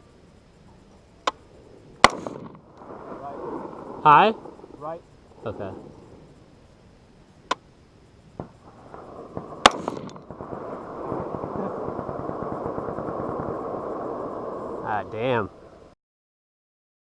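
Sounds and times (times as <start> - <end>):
steady rushing noise: 0.0 - 15.9
gunshots: 2.0 - 4.7, 8.4 - 15.4.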